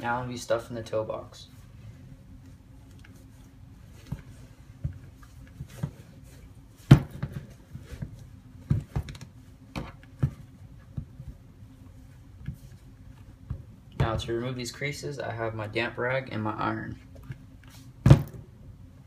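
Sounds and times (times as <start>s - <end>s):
soft handling knocks and rustles: 2.4s - 14.4s.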